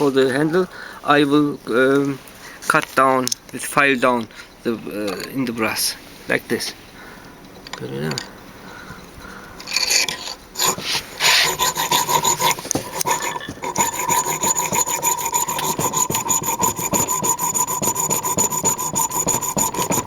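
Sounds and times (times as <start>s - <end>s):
hand file rasping on brass: 9.9s - 20.0s.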